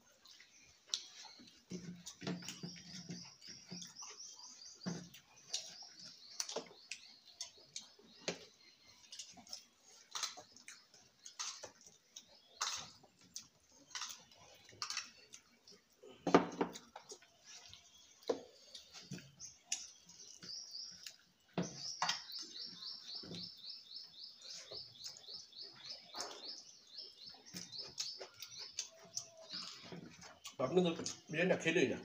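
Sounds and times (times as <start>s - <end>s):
chewing and wet mouth smacks: 0.2s - 2.6s, 3.4s - 16.0s, 16.7s - 21.4s, 27.3s - 31.3s.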